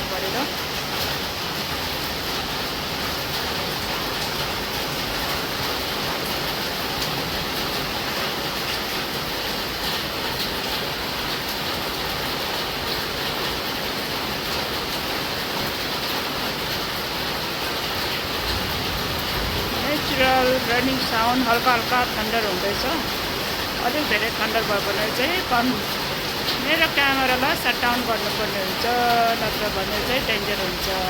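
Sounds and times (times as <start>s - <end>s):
heavy rain falling: 0.0s - 31.0s.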